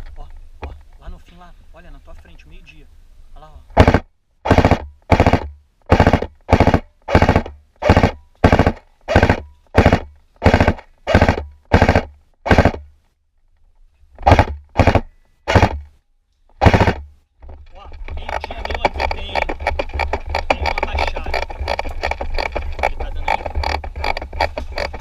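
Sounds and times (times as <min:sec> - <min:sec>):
airsoft rifle full-auto bursts: 0:03.8 - 0:12.9, 0:14.2 - 0:15.9, 0:16.6 - 0:17.1.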